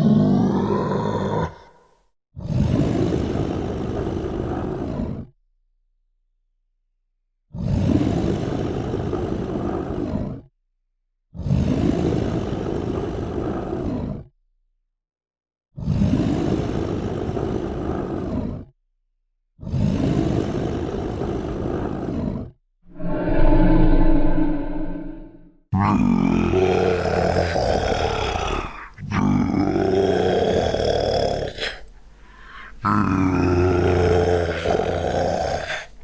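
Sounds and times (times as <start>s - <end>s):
monster growling roars: 0.0s - 1.8s, 2.4s - 5.3s, 7.6s - 10.5s, 11.4s - 14.3s, 15.8s - 18.7s, 19.6s - 36.0s
tonal monster roar: 0.0s - 1.8s, 22.9s - 36.0s.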